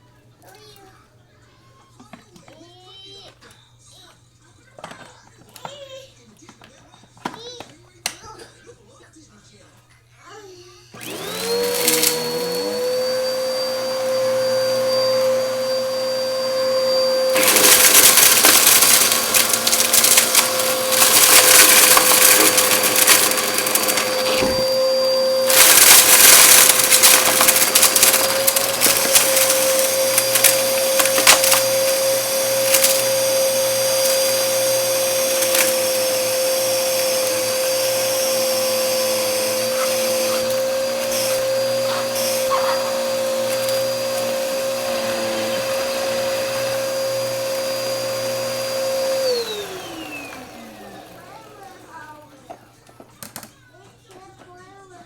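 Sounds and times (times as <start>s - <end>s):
vacuum cleaner motor whine: 10.9s - 53.1s
vacuum rushing over rug: 11.0s - 52.6s.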